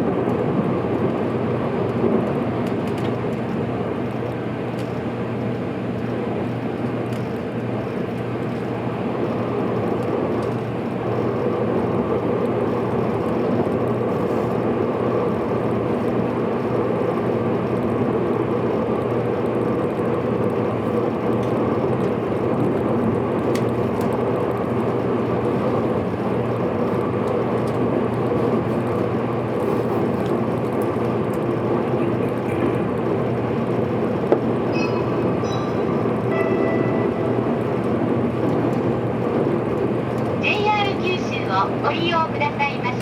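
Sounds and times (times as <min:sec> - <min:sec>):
train wheels rumbling on rail: 0:00.0 - 0:43.0
faint hum: 0:34.7 - 0:43.0.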